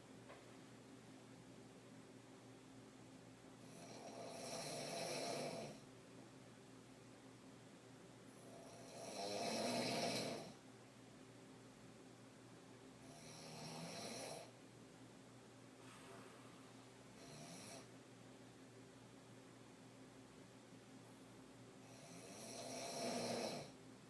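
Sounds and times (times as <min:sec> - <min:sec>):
woman snoring: 0:03.6 - 0:05.8, 0:08.4 - 0:10.6, 0:13.0 - 0:14.5, 0:17.2 - 0:17.9, 0:21.9 - 0:23.8.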